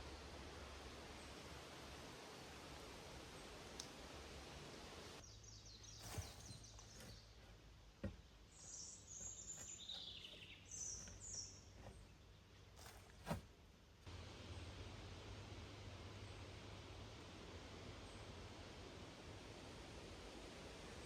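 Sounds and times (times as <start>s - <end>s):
faint high bird chirps: 5.2s - 7.4s, 8.5s - 12.3s.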